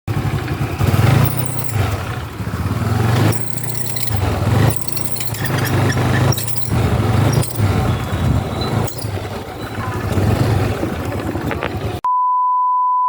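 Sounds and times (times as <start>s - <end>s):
scooter engine running: 0.1s - 12.1s
short high squeaks: 3.3s - 10.6s.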